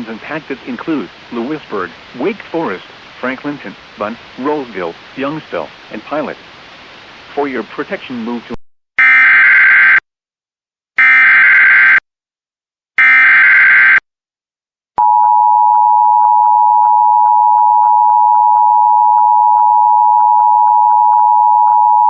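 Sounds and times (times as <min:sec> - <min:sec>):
steady single-pitch alarm tone: 0:15.0 - 0:22.0.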